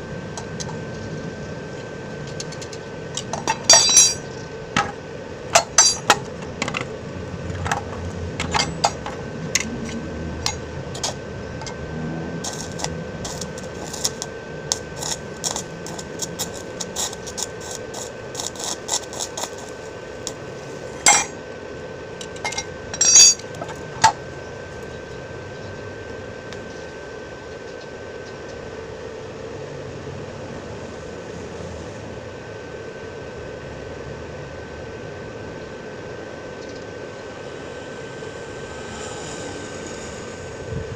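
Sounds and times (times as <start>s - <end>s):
steady hum: 0.0s - 40.9s
metal tools tapping on bearing: 2.5s - 4.9s, 5.5s - 6.8s, 7.6s - 9.7s, 21.1s - 21.3s, 22.2s - 24.2s.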